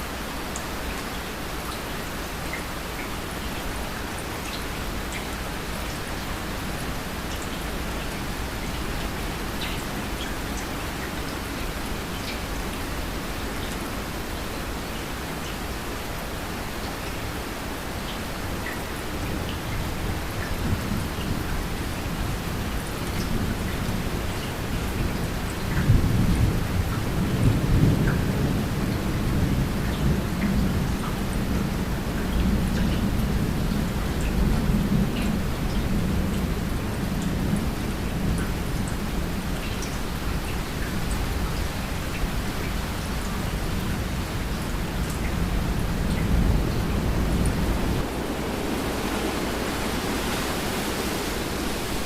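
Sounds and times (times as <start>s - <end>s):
rain drops ticking: 0.0s - 52.0s
rain hissing: 0.0s - 52.0s
thunder rumbling: 45.0s - 52.0s.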